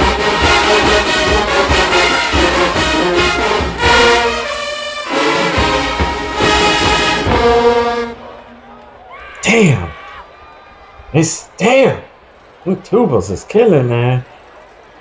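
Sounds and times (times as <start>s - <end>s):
marching band playing: 0.0s - 8.8s
held brass chords: 0.0s - 8.9s
drum hits: 5.6s - 8.2s.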